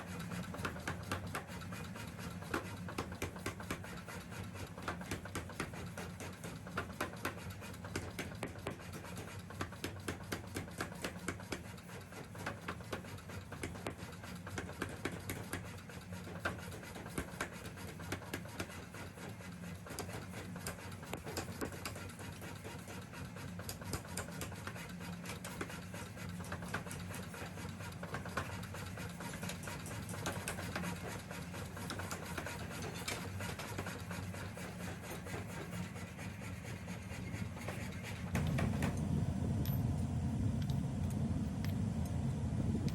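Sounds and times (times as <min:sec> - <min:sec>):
machine hum: 0:37.8 - 0:42.9.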